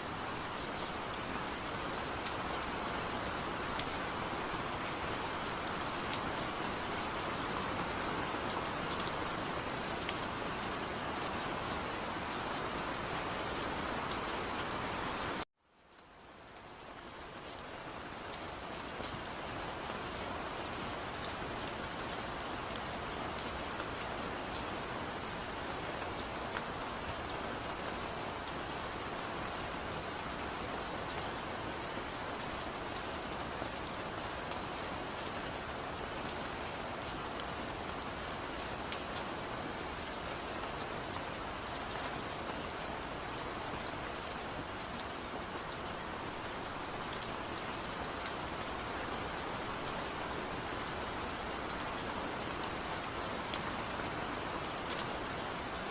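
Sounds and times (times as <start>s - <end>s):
steady rain hiss: 0.0s - 55.9s
raindrops ticking on surface: 41.5s - 55.9s.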